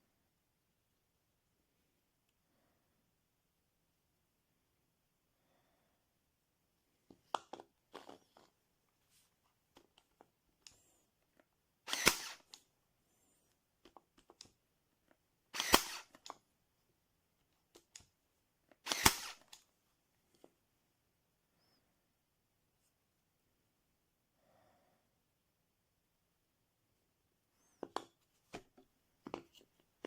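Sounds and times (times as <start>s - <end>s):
staple gun firing: 11.9s - 12.5s, 15.6s - 16.3s, 18.8s - 19.6s.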